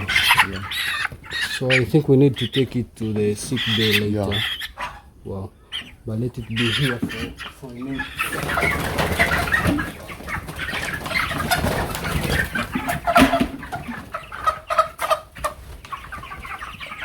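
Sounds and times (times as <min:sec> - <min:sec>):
chickens clucking and chirping: 0:00.0 - 0:17.0
chickens scuffling: 0:00.0 - 0:17.0.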